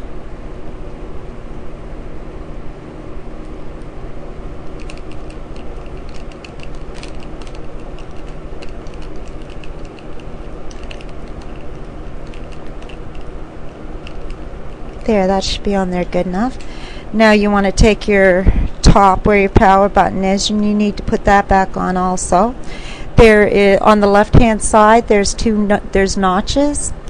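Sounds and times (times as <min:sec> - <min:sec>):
steady low hum: 0:00.0 - 0:27.0
screwdriver clicking and ticking: 0:04.7 - 0:13.3.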